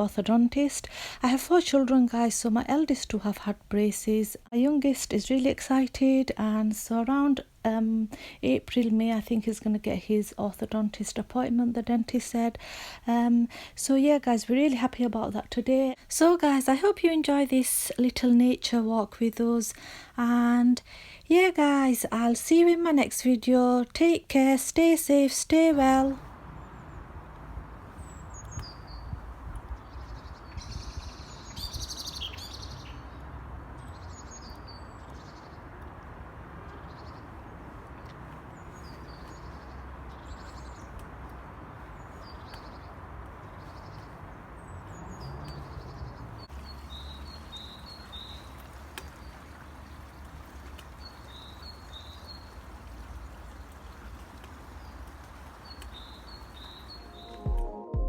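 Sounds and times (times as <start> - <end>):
small birds chirping: 25.8 - 57.5.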